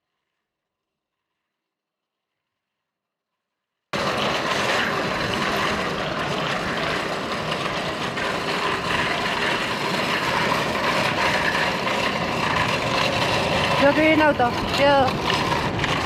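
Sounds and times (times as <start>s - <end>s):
wind and road noise: 4.0s - 16.0s.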